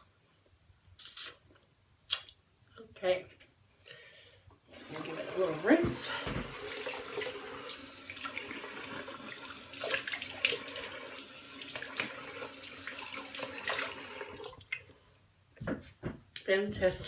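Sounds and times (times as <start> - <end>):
tap water running into sink: 4.8 - 14.7.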